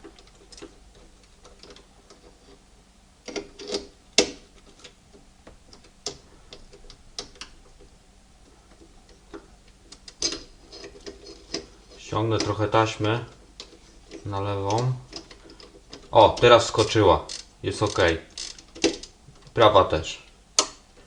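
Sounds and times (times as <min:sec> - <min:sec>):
typewriter parts clicking and clattering: 0:08.7 - 0:19.6.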